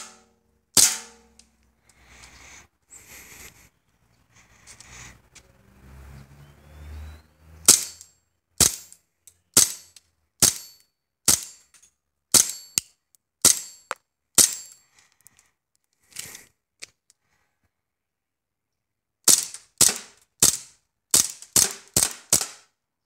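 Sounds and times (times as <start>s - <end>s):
airsoft pistol shots: 0.0s - 1.3s, 21.2s - 22.6s.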